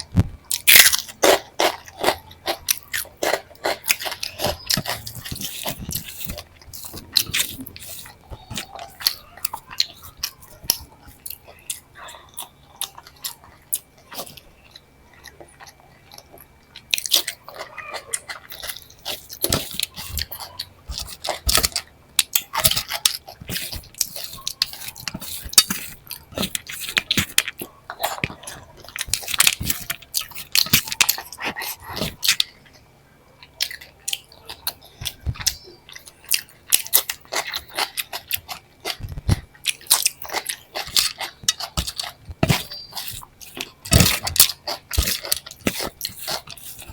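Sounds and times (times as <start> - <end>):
person chewing with crunches: 0.0 - 46.9.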